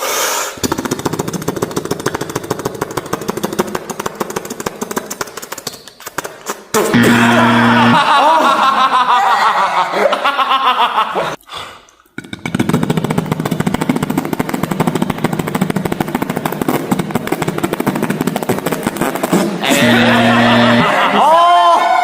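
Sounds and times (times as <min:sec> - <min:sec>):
beatboxer imitating a helicopter: 0:06.8 - 0:08.0, 0:12.2 - 0:21.2.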